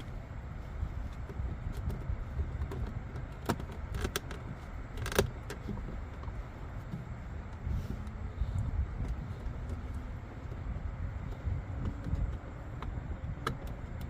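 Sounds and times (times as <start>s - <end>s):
steady low rumble: 0.0s - 14.0s
wiring connectors clicking: 1.2s - 6.4s, 8.6s - 14.0s.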